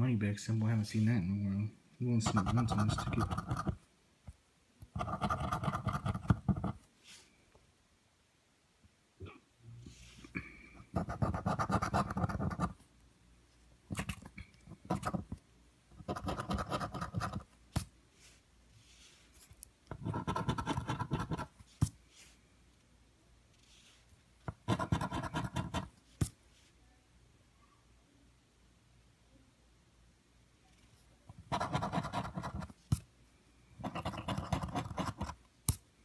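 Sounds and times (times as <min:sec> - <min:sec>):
scratching a lottery ticket: 0:02.2 - 0:03.8, 0:05.0 - 0:06.8, 0:10.8 - 0:12.8, 0:13.9 - 0:15.4, 0:16.0 - 0:17.5, 0:19.9 - 0:21.5, 0:23.7 - 0:25.9, 0:31.3 - 0:32.8, 0:33.8 - 0:35.4.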